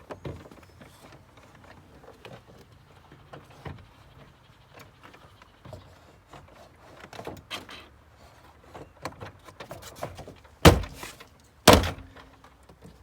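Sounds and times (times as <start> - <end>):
hand thumping door panel: 10.7 - 12.1
plastic trim panel clicks and rustles: 10.7 - 12.1.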